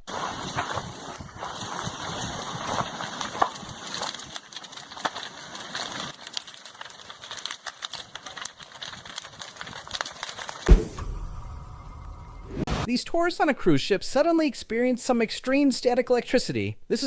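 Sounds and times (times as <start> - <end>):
burning timber crackling: 0.1 - 12.8
heavy thump: 10.7 - 12.9.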